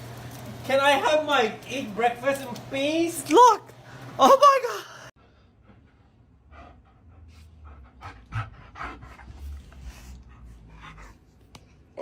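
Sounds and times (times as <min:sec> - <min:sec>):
animal panting: 0:05.6 - 0:11.3.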